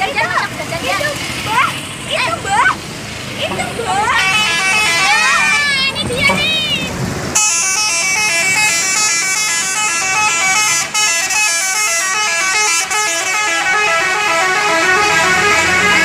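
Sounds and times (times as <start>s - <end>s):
multi-tone musical bus horn: 4.2s - 5.8s, 7.4s - 16.0s.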